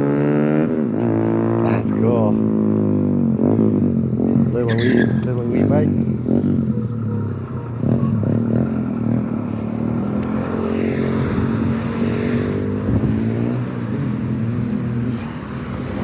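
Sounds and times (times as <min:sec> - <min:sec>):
small motorbike engine buzzing: 0:03.4 - 0:16.0.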